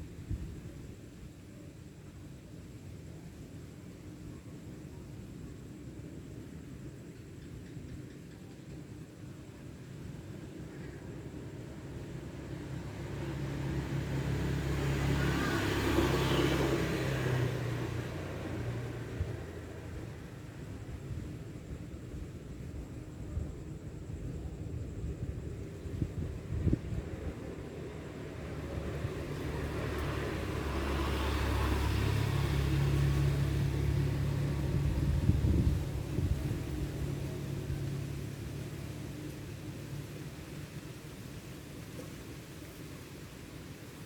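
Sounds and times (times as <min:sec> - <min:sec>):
motor vehicle passing by: 0:11.2 - 0:21.2, 0:25.0 - 0:44.0.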